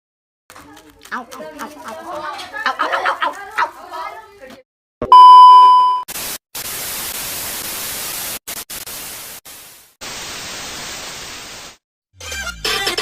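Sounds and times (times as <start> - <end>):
white noise static bursts: 6.1 - 11.8.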